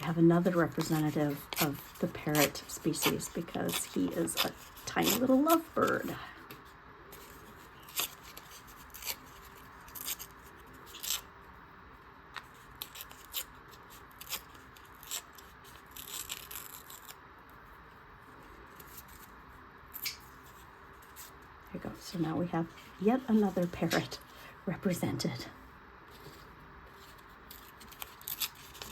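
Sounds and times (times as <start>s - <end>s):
faint room hum: 0.0s - 28.9s
scissors snipping paper: 0.1s - 6.1s, 27.5s - 28.9s.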